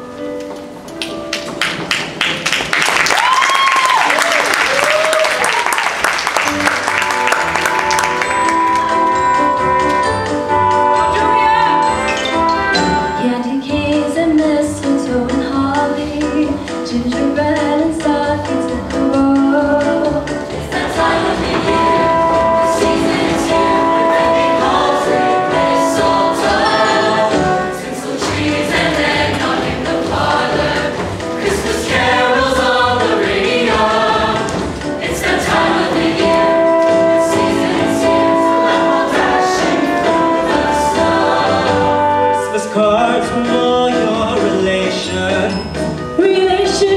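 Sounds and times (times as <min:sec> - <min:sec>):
ensemble music with choir-like chords: 0:20.3 - 0:42.5.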